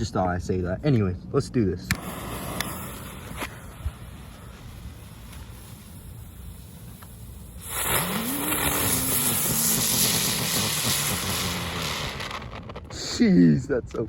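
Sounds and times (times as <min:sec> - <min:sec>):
firework low whirring tone: 0:01.8 - 0:14.0
firework spraying hiss: 0:01.9 - 0:13.1.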